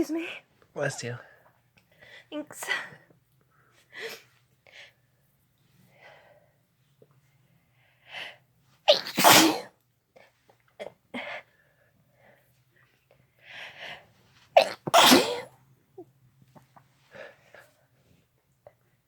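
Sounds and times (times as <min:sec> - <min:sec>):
person sneezing: 0:08.9 - 0:09.7, 0:14.6 - 0:15.5.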